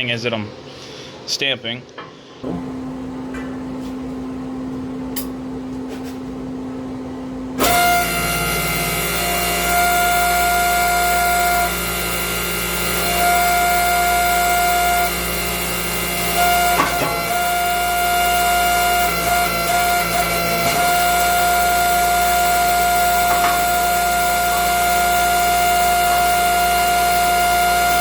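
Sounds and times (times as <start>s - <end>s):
low motor hum: 2.4s - 28.0s
hydraulic pump whine: 7.5s - 28.0s.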